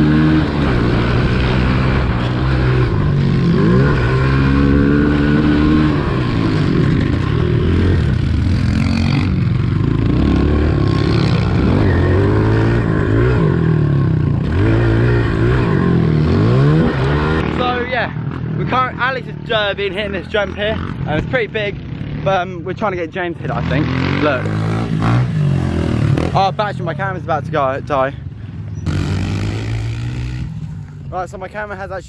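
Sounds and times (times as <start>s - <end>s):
pit bike engine revving: 0.0s - 26.8s, 28.8s - 31.1s.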